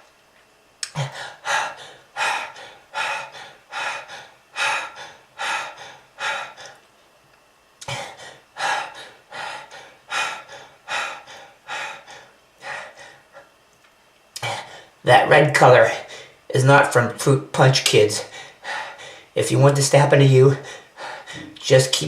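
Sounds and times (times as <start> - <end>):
person coughing harshly: 0.9 - 1.4.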